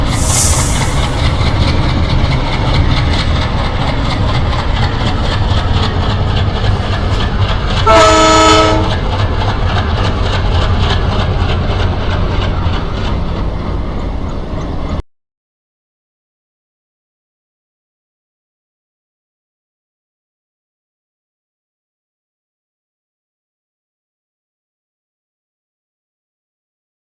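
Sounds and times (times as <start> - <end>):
toy train ride rumbling: 0.0 - 14.9
train horn: 7.8 - 9.1.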